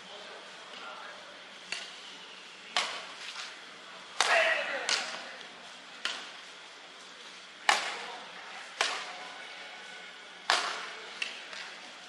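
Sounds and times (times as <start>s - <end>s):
rackets hitting shuttlecock: 1.6s - 2.0s, 2.7s - 3.4s, 4.1s - 5.3s, 6.0s - 6.4s, 7.6s - 9.2s, 10.4s - 11.8s.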